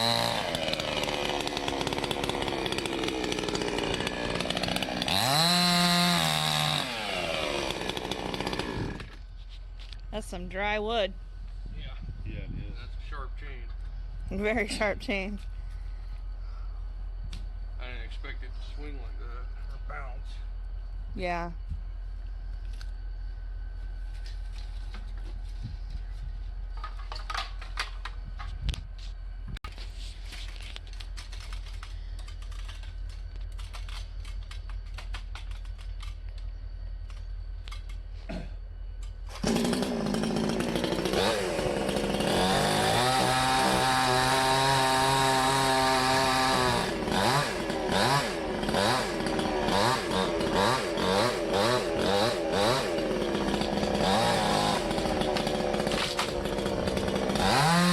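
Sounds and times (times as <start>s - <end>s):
chainsaw revving: 0.0s - 9.2s, 39.3s - 57.9s.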